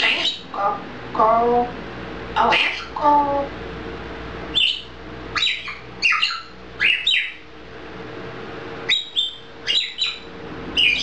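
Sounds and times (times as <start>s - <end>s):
parrot whistled chirps: 0.0s - 0.5s, 4.5s - 7.4s, 8.9s - 11.0s.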